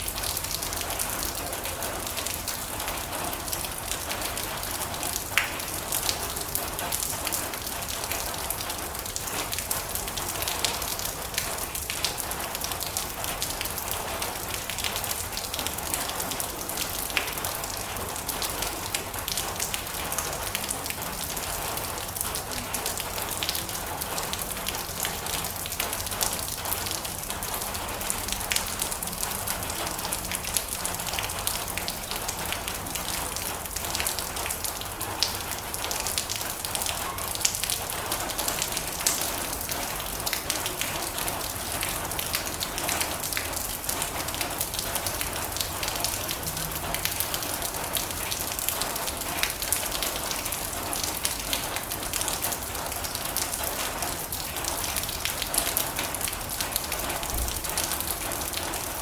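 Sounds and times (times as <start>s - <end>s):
rain on a metal roof: 0.0s - 59.0s.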